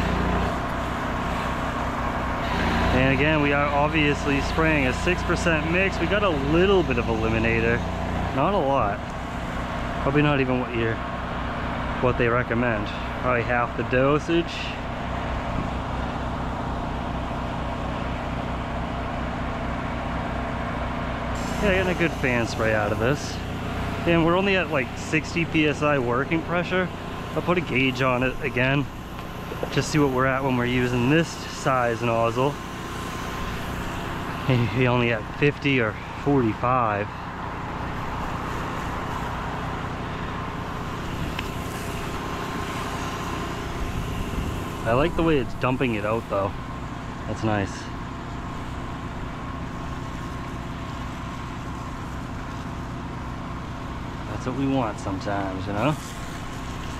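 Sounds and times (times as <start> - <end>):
spray gun hissing: 0.0 - 8.2, 21.4 - 35.0, 37.9 - 46.4, 55.8 - 56.9
motor humming: 0.0 - 56.9
pump running: 0.0 - 56.9.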